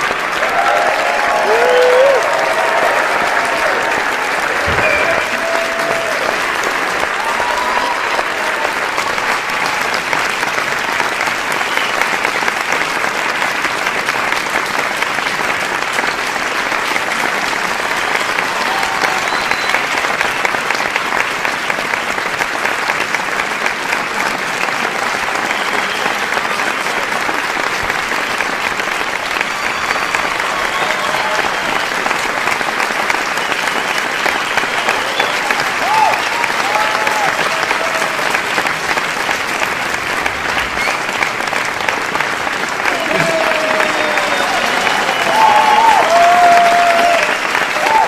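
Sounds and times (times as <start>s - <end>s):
audience clapping: 0.0s - 48.0s
crowd shouts and whistles: 0.4s - 9.3s, 18.4s - 20.4s, 25.5s - 26.4s, 29.3s - 32.2s, 33.3s - 38.2s, 40.8s - 41.2s, 42.9s - 48.0s.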